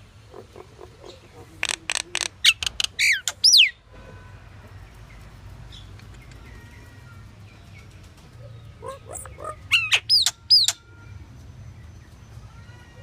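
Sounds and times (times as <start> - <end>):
myna whistled calls: 8.8 - 10.9.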